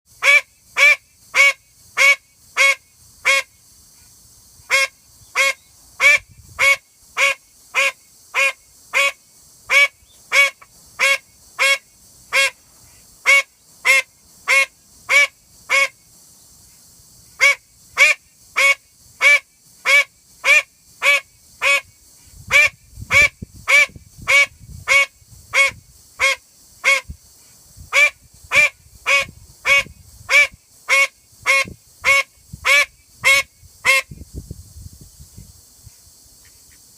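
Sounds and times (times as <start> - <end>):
duck quacking: 4.7 - 12.6, 13.3 - 15.9.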